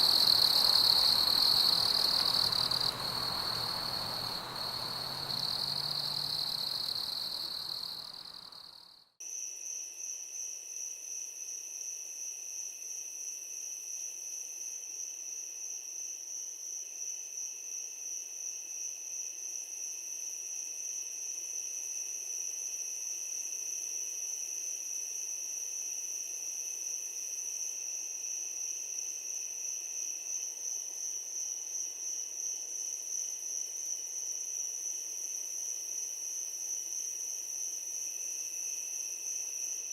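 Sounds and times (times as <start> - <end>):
night insects trilling: 0.0 - 8.8.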